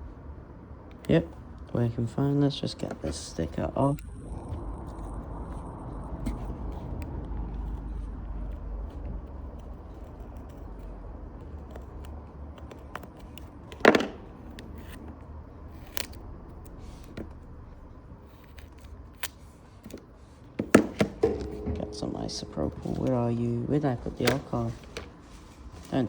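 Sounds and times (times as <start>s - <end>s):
sharp knock: 20.7s - 24.4s.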